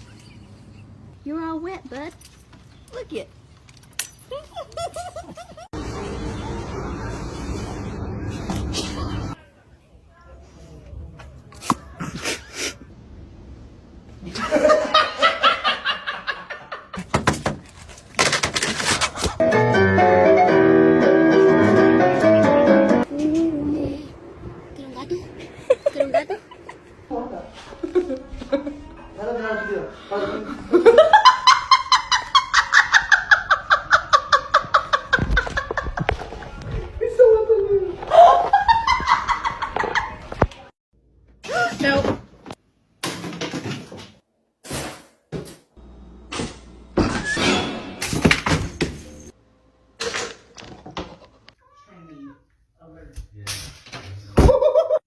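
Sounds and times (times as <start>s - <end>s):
person laughing: 4.3s - 5.7s, 25.4s - 26.9s
person laughing hard: 4.3s - 5.7s.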